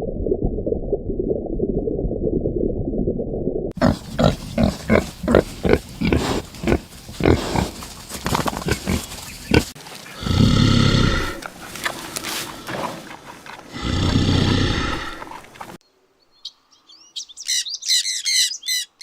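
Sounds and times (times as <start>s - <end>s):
pig calling: 3.8s - 15.8s
pig grunting: 3.8s - 15.8s.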